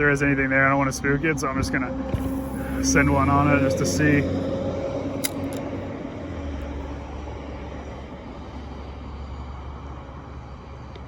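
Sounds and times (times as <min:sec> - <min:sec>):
distant engine rumble: 0:00.0 - 0:10.3.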